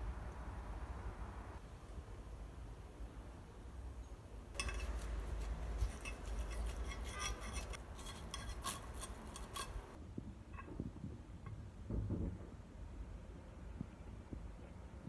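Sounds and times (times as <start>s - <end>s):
kitchen utensils and dishes clinking: 4.6s - 10.0s.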